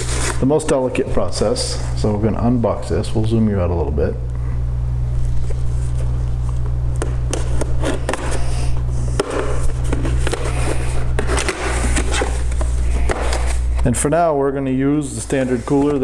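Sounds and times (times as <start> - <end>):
packaging crinkling and scraping: 0.0 - 2.0, 5.2 - 13.9
steady low hum: 0.0 - 16.0.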